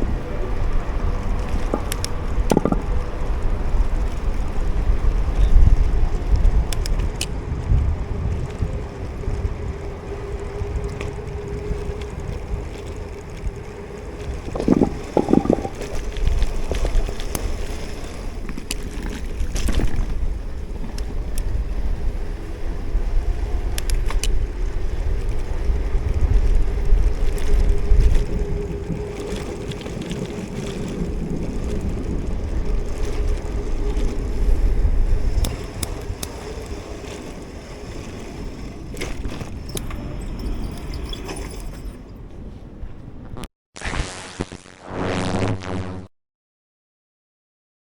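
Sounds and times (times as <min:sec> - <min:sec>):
wind buffeting microphone: 0:00.0 - 0:43.4
brief pitched sound: 0:43.3 - 0:46.1.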